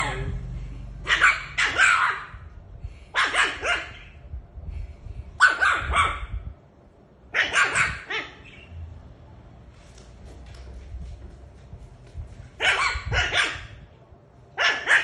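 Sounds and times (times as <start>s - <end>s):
dog barking: 1.0s - 2.4s, 3.1s - 4.2s, 5.4s - 6.4s, 7.3s - 8.6s, 12.6s - 13.9s, 14.6s - 15.0s.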